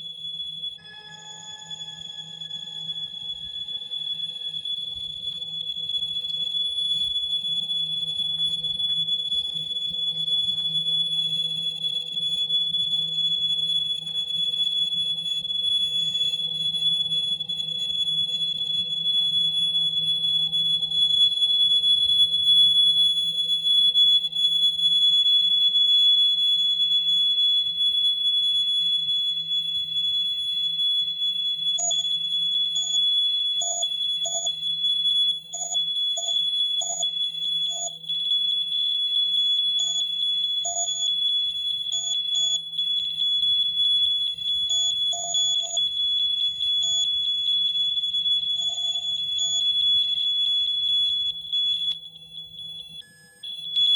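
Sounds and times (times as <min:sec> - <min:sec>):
high-pitched alarm-like tone: 0:00.8 - 0:08.9.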